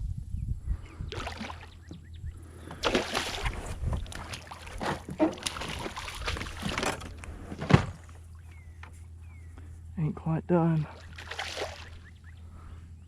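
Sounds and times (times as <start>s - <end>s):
low wind rumble: 0.0s - 13.0s
fish splashing in water: 1.1s - 1.8s, 2.7s - 7.2s, 11.0s - 12.1s.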